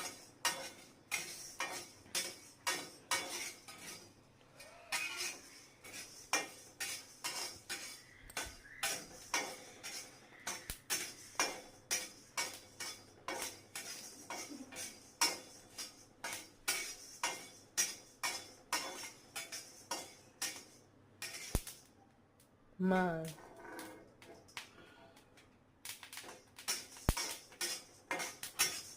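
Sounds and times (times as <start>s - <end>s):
popcorn popping in metal pan: 0.0s - 21.9s, 25.8s - 28.9s.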